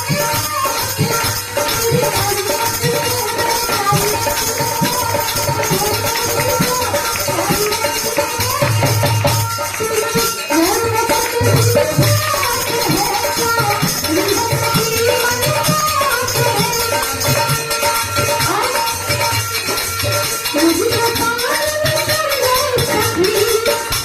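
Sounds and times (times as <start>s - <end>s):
jingling percussion: 0.0s - 24.0s.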